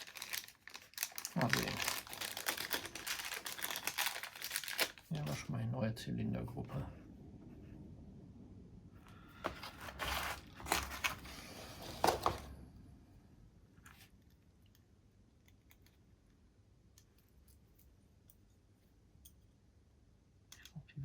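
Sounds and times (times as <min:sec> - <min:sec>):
packaging crinkling and rustling: 0:00.0 - 0:05.5, 0:09.4 - 0:12.6.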